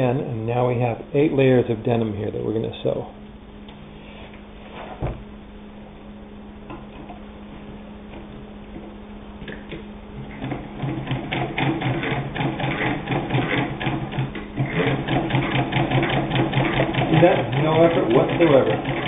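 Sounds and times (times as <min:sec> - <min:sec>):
sewing machine clattering: 0:10.3 - 0:19.0.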